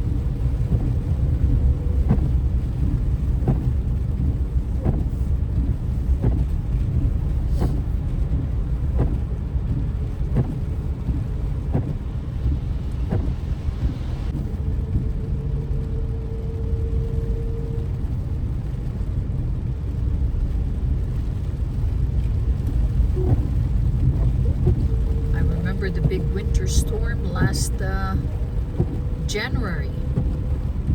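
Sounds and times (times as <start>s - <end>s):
car road and engine rumble: 0.0s - 30.9s
windshield wiper knocks: 2.0s - 13.4s, 28.7s - 29.0s
faint steady tone: 14.4s - 18.2s.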